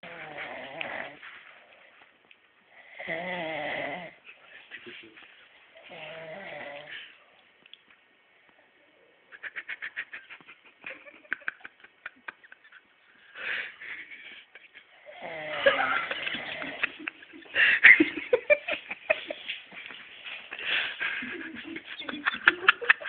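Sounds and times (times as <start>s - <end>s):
man snoring: 0.0s - 1.2s, 2.9s - 4.2s, 5.9s - 6.9s, 15.0s - 16.9s.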